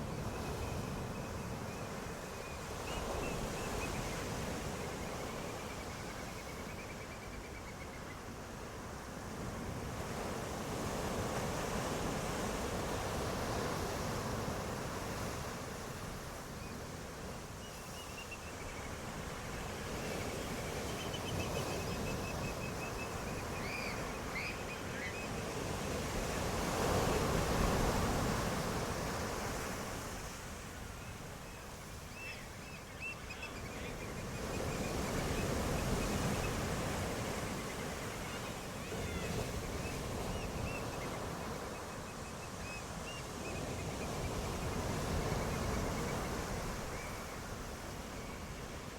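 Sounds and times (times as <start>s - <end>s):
ocean waves washing ashore: 18.8s - 48.9s.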